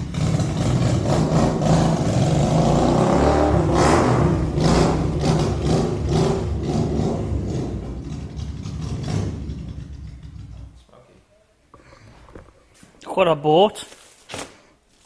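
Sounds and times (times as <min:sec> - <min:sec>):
car engine revving: 0:00.0 - 0:10.8.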